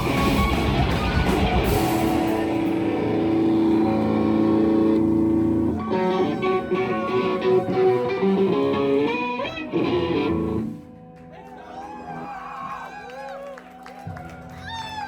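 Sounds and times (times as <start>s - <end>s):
bent lead guitar notes: 0.0s - 11.2s
live rock band playing: 0.0s - 11.3s.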